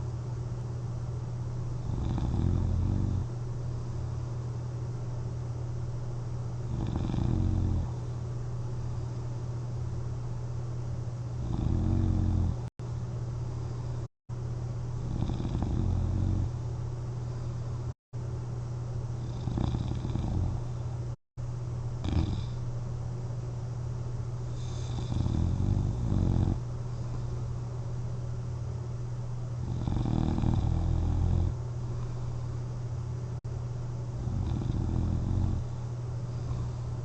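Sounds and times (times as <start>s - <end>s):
steady low hum: 0.0s - 37.0s
person snoring: 1.8s - 3.3s, 6.7s - 8.1s, 11.4s - 12.7s, 15.0s - 16.6s, 19.2s - 20.8s, 22.0s - 22.6s, 24.5s - 27.3s, 29.6s - 31.6s, 34.2s - 35.7s.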